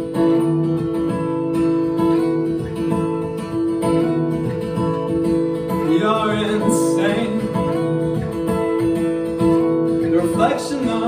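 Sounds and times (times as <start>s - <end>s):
acoustic guitar strumming: 0.0s - 11.0s
person singing folk song: 4.9s - 11.0s.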